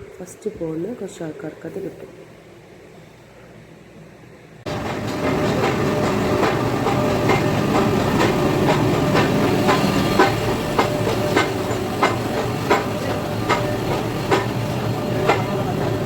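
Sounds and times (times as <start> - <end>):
train rumbling on track: 0.0 - 16.0
wheels clicking over rail joints: 4.7 - 16.0.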